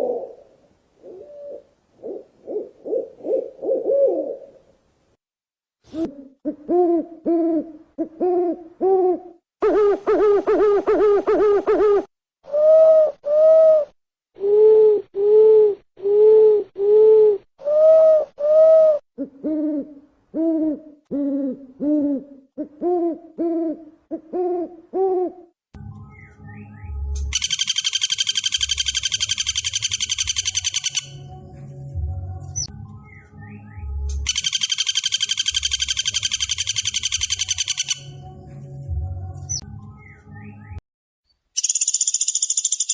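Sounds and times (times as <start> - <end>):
owl hooting: 0.0 - 4.6, 5.9 - 25.5, 27.4 - 31.2, 34.3 - 38.1
bird rapid high chirping: 26.2 - 31.2, 32.6 - 38.2, 41.6 - 42.9.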